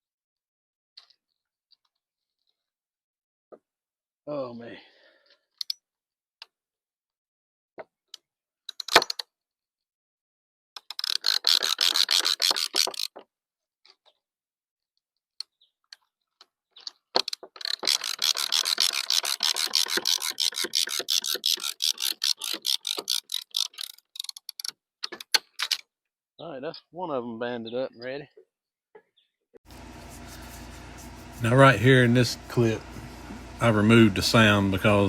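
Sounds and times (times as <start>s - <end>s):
ratchet clicking: 10.8s - 13.1s, 17.3s - 24.7s.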